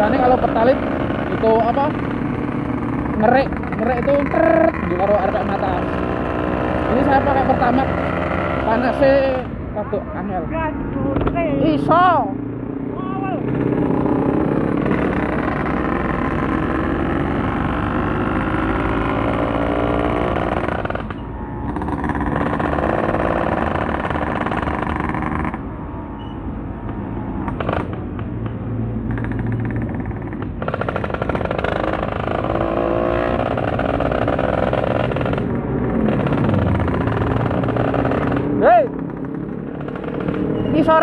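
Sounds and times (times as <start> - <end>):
motorcycle engine accelerating: 0.0 - 9.6, 11.5 - 26.2, 26.8 - 41.0.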